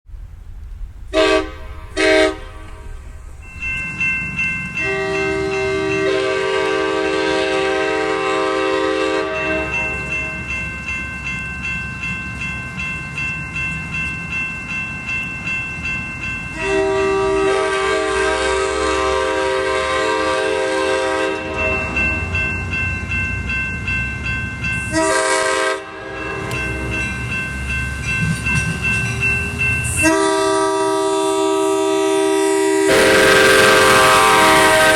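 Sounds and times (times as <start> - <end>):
train horn blasts: 1.1 - 3.3, 4.8 - 10.2, 16.5 - 22.3, 24.9 - 26.7, 29.9 - 34.9
train wheels clattering: 20.8 - 31.0.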